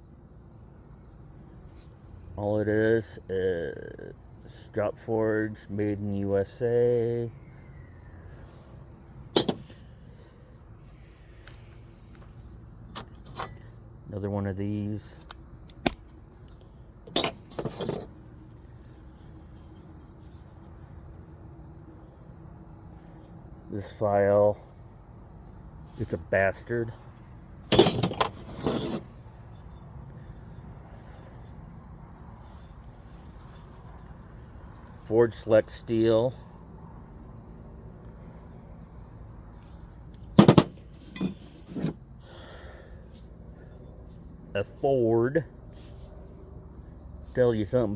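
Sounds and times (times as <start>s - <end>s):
crickets chirping: 0.0s - 47.9s
metal hand tools clinking: 9.4s - 9.8s, 17.1s - 18.1s, 27.7s - 29.0s, 40.4s - 41.6s.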